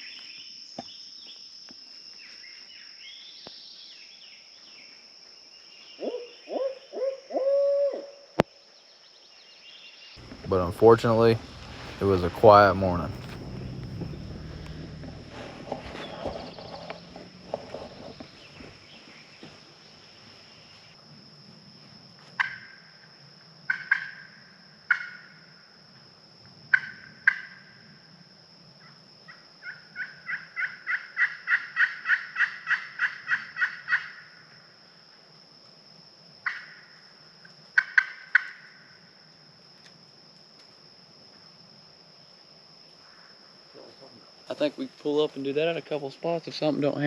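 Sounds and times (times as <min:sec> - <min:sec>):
high insect drone: 0:10.2 - 0:30.0.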